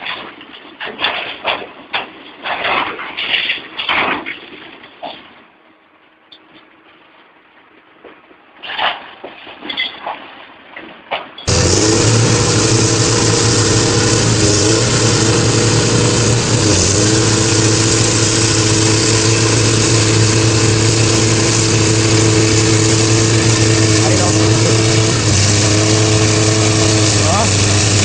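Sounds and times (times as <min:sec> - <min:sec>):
engine running steadily: 0:11.5 - 0:28.0.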